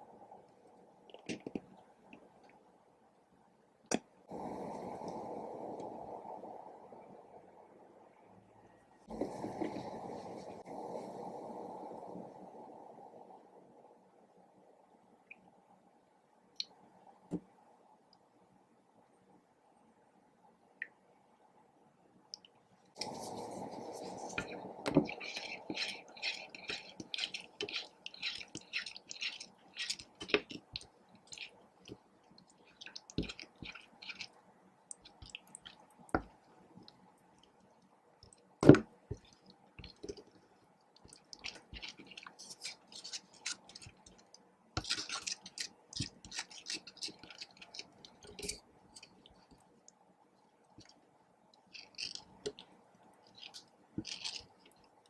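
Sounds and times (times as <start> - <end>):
slime being stirred and squished: 23.0 - 37.6, 38.2 - 50.0, 51.6 - 55.0.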